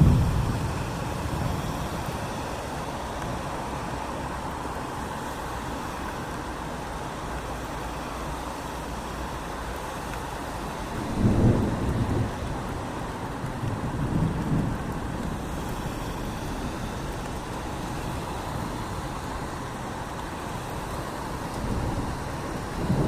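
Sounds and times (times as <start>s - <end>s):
thunder rumbles: 0.0s - 3.4s, 10.9s - 15.8s, 21.5s - 23.0s
heavy rain: 0.0s - 23.0s.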